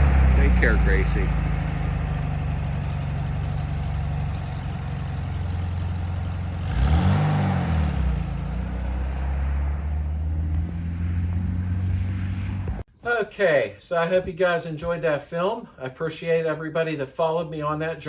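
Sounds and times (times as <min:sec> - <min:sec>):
car engine running: 0:00.0 - 0:12.9.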